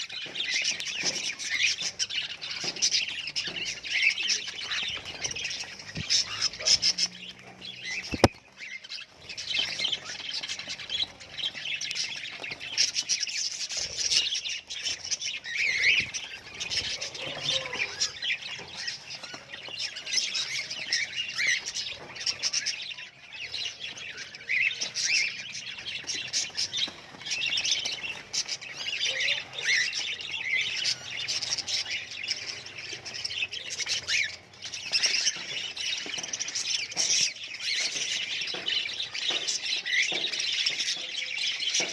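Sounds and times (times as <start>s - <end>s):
budgerigars chattering: 0.0s - 22.7s.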